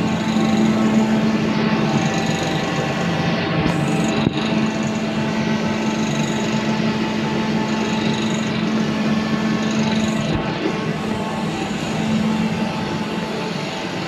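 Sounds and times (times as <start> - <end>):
air conditioner hum and fan: 0.0 - 14.0.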